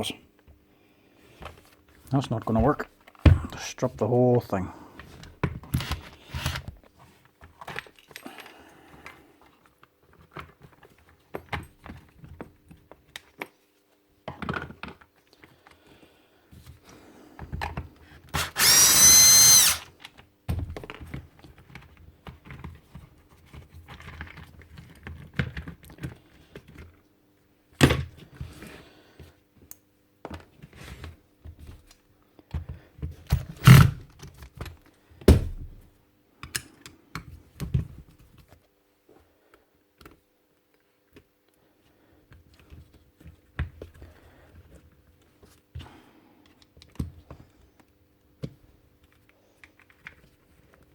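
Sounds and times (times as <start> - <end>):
small power tool whirring: 18.3 - 19.9
tool parts clicking and knocking: 18.4 - 19.9.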